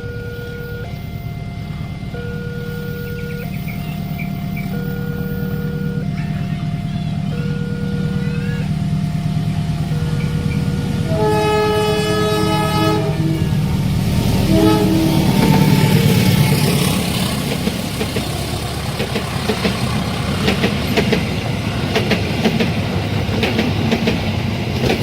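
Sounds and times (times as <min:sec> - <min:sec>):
level crossing two-tone alarm: 0:00.0 - 0:10.8
locomotive horn blast: 0:00.0 - 0:17.6
train rumble: 0:00.0 - 0:25.0.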